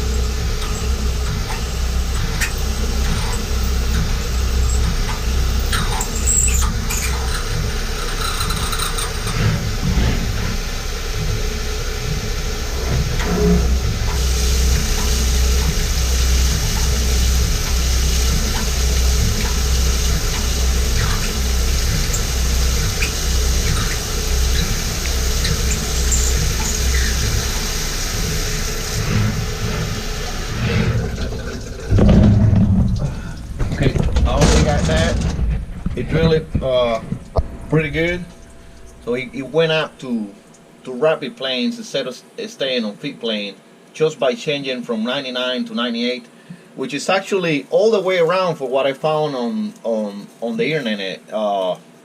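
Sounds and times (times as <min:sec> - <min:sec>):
short squeals: 0:00.0 - 0:10.2, 0:12.9 - 0:35.7
milling machine humming: 0:00.0 - 0:40.8
steady hiss: 0:00.0 - 0:52.0.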